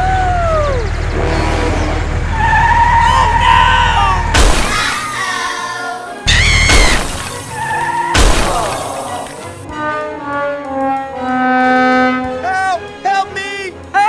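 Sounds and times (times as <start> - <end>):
brass-like music with held notes: 0.9 - 3.0, 4.3 - 14.0
loud crashes: 4.4 - 9.6.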